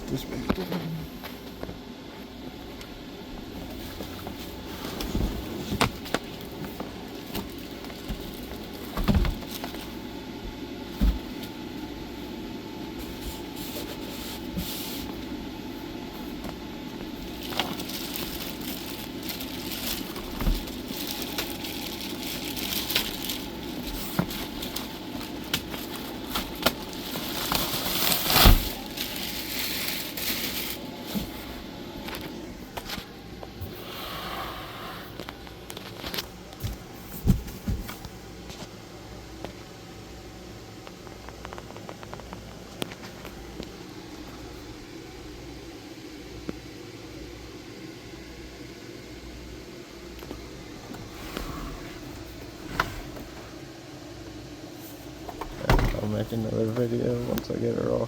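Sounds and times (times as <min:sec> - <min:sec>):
crinkling plastic: 0:03.7 - 0:10.0, 0:16.3 - 0:33.1, 0:35.2 - 0:38.6
packaging being handled: 0:03.7 - 0:10.0, 0:16.2 - 0:33.1.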